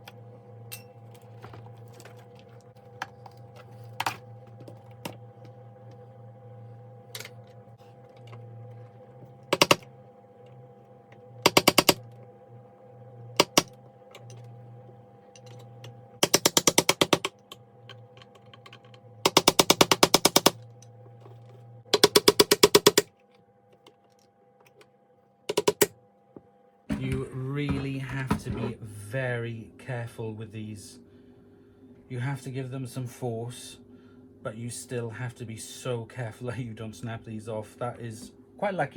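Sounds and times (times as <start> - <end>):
steady low hum: 0.0 - 38.9
rapid ratchet clicking: 11.5 - 12.0, 13.4 - 13.7, 16.2 - 17.4, 19.3 - 20.6.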